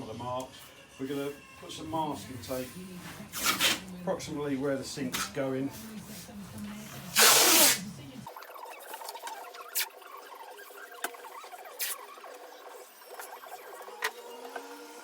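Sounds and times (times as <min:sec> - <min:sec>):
tape squeaking and rustling: 0:03.2 - 0:03.9, 0:07.1 - 0:07.8, 0:08.6 - 0:14.0
masking tape ripping off roll: 0:03.3 - 0:03.8, 0:07.1 - 0:07.9, 0:11.3 - 0:12.2.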